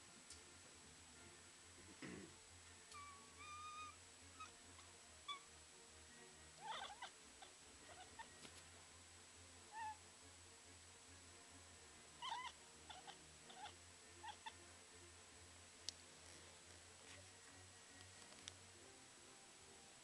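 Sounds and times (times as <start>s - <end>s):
cat chirping and chattering: 3.0s - 5.5s, 6.6s - 8.4s, 9.7s - 10.0s, 12.2s - 14.6s.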